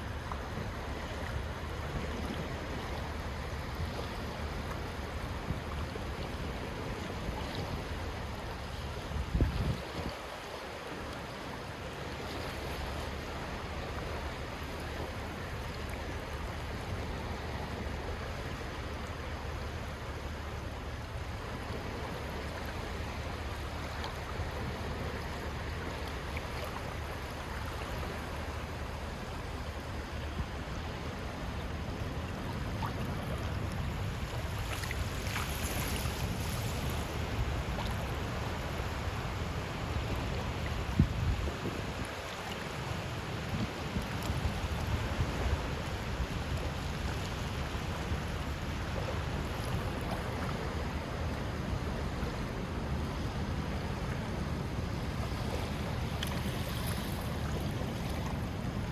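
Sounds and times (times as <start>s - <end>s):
calm sea waves washing: 0.0s - 58.9s.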